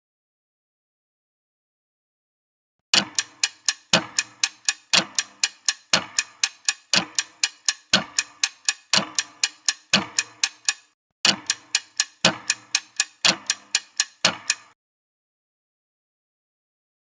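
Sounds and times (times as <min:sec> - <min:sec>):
clock ticking: 0:02.9 - 0:14.8.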